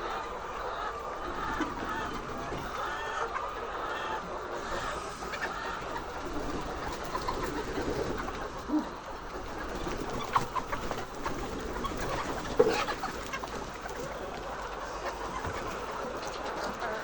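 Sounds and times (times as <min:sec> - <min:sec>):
hens clucking: 0:00.0 - 0:17.0.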